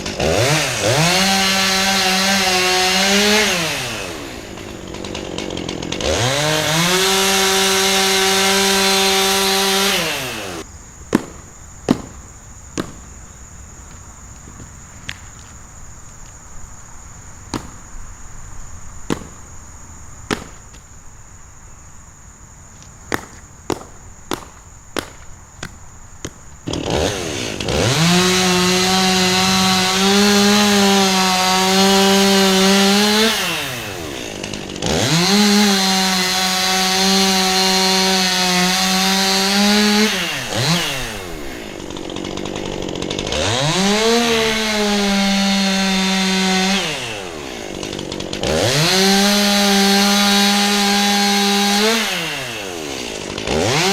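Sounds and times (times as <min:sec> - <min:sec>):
chainsaw revving: 0:00.0 - 0:13.1, 0:26.6 - 0:53.9
sharp knocks: 0:11.1 - 0:12.2, 0:12.8 - 0:13.1, 0:20.3 - 0:20.7.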